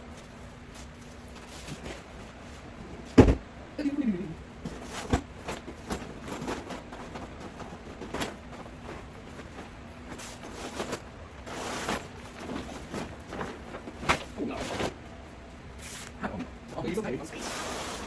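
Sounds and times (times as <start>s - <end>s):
fabric rustling: 4.7s - 15.1s.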